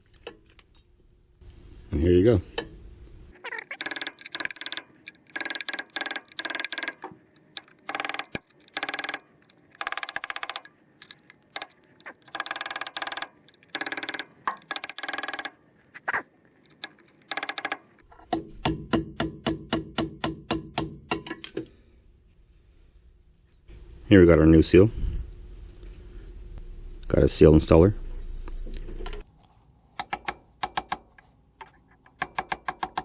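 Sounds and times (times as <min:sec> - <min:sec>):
ratchet wrench clicking: 0:03.7 - 0:15.5, 0:16.7 - 0:17.8.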